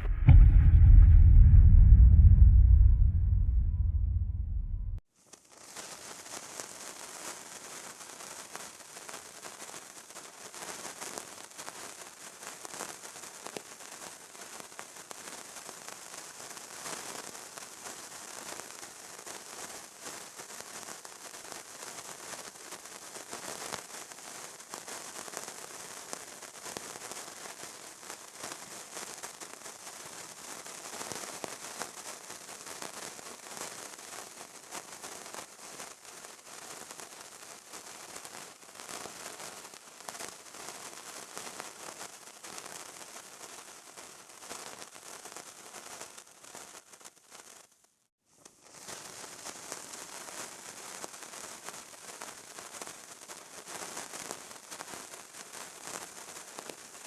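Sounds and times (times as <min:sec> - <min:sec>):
fire crackling: 0:00.0 - 0:05.0.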